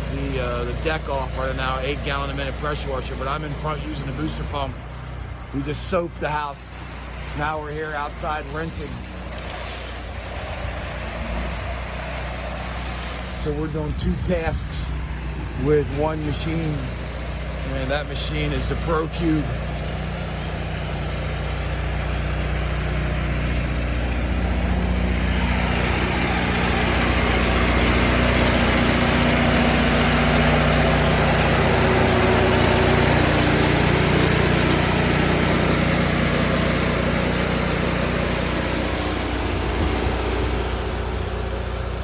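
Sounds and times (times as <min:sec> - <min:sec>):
engine running: 0:00.0 - 0:42.0
water spray hiss: 0:06.6 - 0:13.6.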